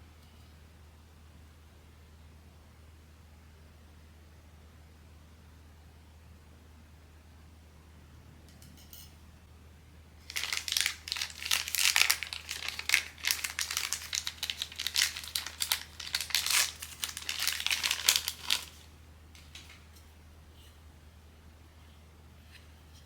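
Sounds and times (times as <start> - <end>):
plastic packaging crinkling: 10.2 - 19.8.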